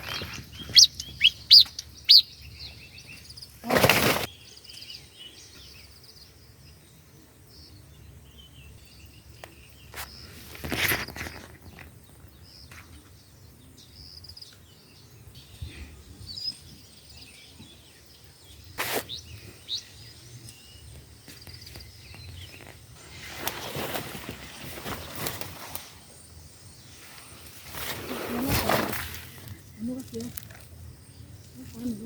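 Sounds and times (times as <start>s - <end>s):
rustling and scraping: 0.0s - 0.9s, 3.6s - 4.3s, 9.9s - 13.1s, 18.8s - 19.2s, 21.3s - 26.3s, 26.9s - 30.7s
small bird chirps: 0.0s - 3.6s.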